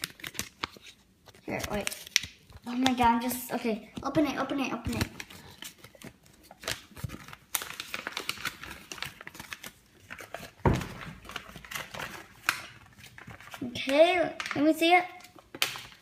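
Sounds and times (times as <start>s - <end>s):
plastic wrapping crinkling and tearing: 0.0s - 16.0s
thump: 10.6s - 11.0s.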